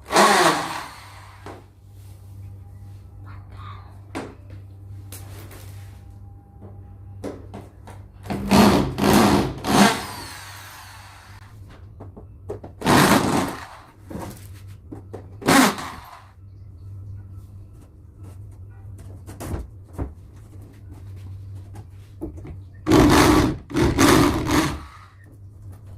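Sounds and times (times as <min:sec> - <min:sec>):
electric drill bursts: 0:00.0 - 0:01.4, 0:08.5 - 0:11.4, 0:15.5 - 0:16.3, 0:22.9 - 0:25.2
steady low hum: 0:00.0 - 0:25.9.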